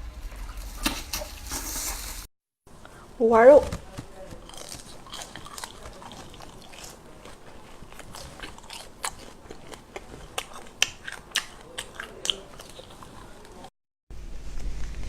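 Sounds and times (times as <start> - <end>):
person chewing and biting: 3.9 - 13.7
mouth clicks and smacks: 8.7 - 13.2.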